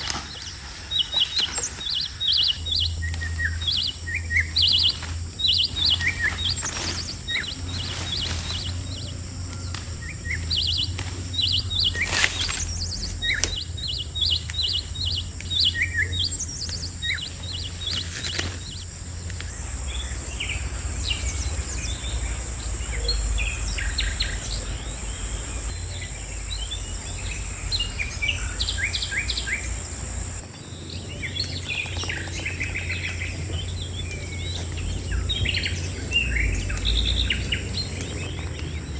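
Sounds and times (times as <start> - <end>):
chicks peeping: 0.0 - 18.9
steady low hum: 0.0 - 38.9.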